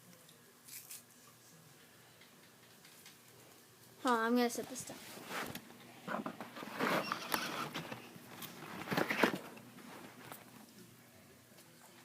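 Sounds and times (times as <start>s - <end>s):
packaging rustling: 6.3s - 10.5s.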